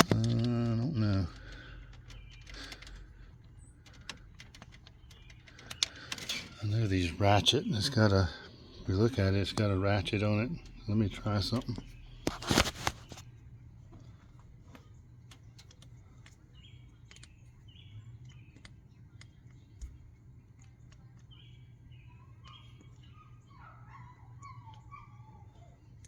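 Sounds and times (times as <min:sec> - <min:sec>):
faint clicks: 0:00.0 - 0:06.7, 0:18.2 - 0:21.4
birds chirping: 0:00.0 - 0:26.0
low steady hum: 0:00.0 - 0:26.0.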